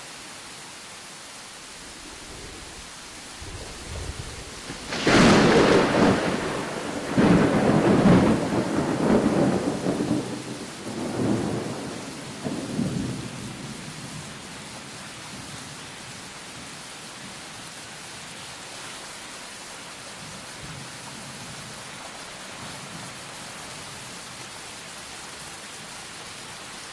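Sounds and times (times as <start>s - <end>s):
rain hissing: 0.0s - 26.9s
thunder rumbling: 1.8s - 13.8s.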